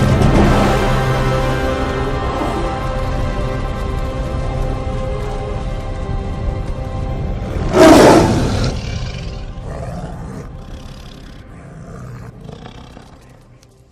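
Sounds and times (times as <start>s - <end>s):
orchestral score: 0.0s - 13.6s
big cat roaring: 7.7s - 13.4s
snarls: 7.7s - 13.4s.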